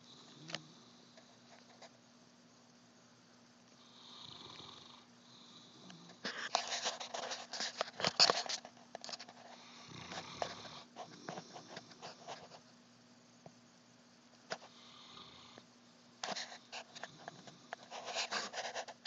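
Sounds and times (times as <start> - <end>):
dog snoring: 0.0 - 1.4, 3.8 - 6.5, 9.5 - 12.2, 14.6 - 15.7.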